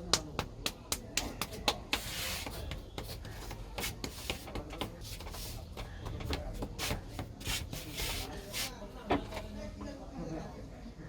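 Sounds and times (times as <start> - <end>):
hands tapping scalp: 0.0 - 7.4
hands rubbing hair: 0.2 - 5.8, 6.7 - 8.8.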